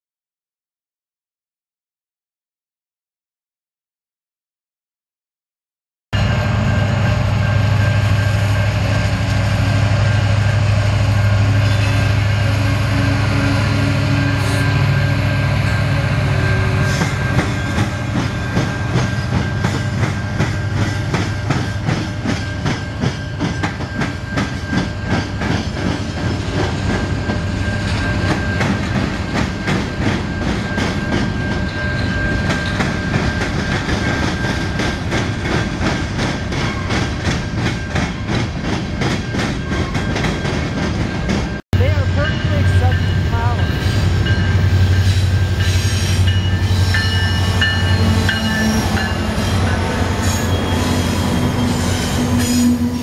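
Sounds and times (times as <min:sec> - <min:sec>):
diesel locomotive hum: 0:06.2 - 0:53.0
train wheels clacking over rail joints: 0:16.9 - 0:41.6.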